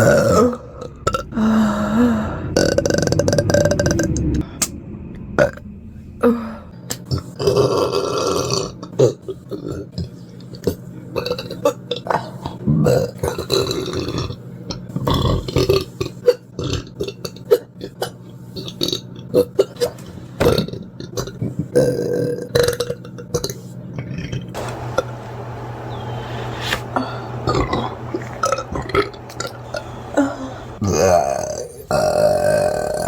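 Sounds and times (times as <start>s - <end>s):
person burping: 0.0s - 2.0s, 2.6s - 4.4s, 29.8s - 33.0s
steady low hum: 0.0s - 21.8s, 23.8s - 33.0s.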